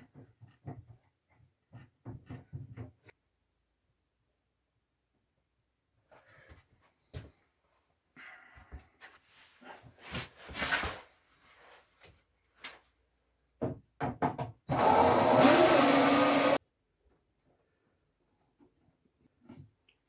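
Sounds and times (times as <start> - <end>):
small power tool motor: 14.7 - 16.6.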